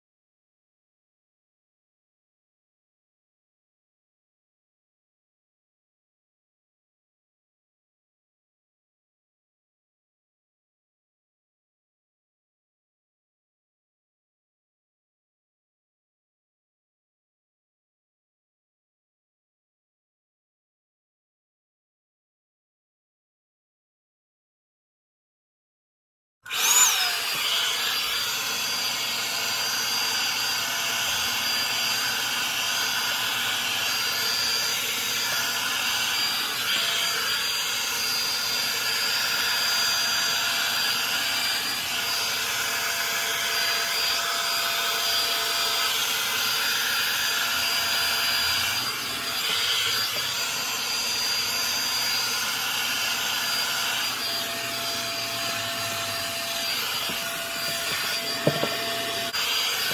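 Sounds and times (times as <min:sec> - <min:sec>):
high motor whine: 0:26.5 - 0:59.9
hot-air brush blowing: 0:26.5 - 0:59.9.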